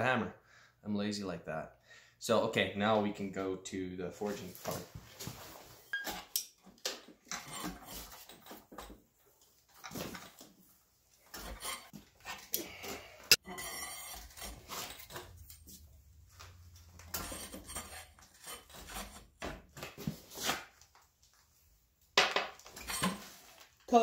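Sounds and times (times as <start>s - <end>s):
steel scraping and clinking: 11.3s - 15.8s, 16.8s - 19.3s.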